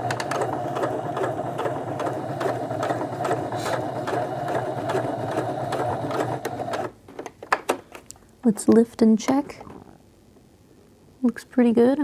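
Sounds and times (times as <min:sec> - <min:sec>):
sewing machine running: 0:00.0 - 0:07.0.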